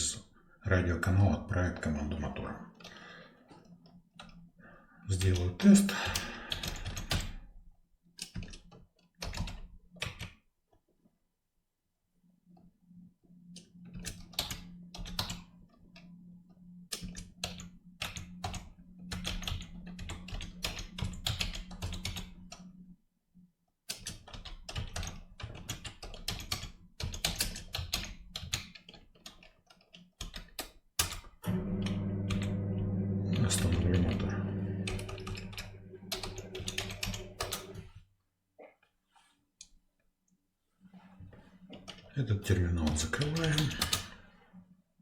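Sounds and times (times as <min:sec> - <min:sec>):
keyboard typing clicks: 0:05.2 - 0:07.4, 0:13.4 - 0:16.1, 0:16.9 - 0:22.8, 0:23.9 - 0:32.6, 0:33.4 - 0:37.8, 0:42.8 - 0:44.2
low steady hum: 0:31.5 - 0:37.9.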